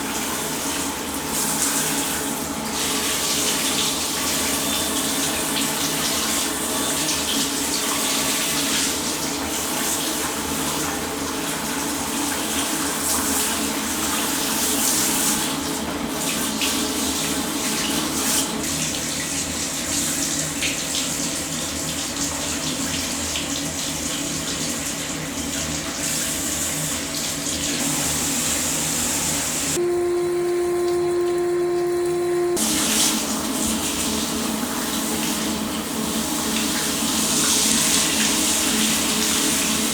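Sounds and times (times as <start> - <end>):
water running from tap: 0.0 - 39.9
steady hum: 29.7 - 38.9.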